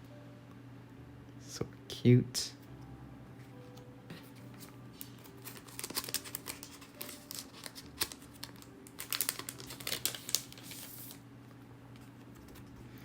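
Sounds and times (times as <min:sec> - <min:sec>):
paper photos rustling: 0:04.3 - 0:11.2.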